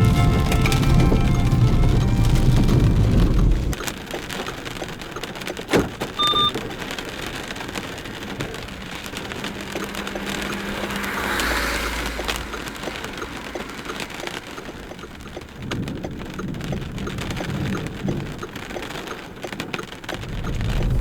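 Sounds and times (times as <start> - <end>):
low rumble: 0.0 - 3.8, 7.4 - 16.0, 20.2 - 21.0
rain spattering: 0.0 - 21.0
short electronic beep: 6.2 - 6.6.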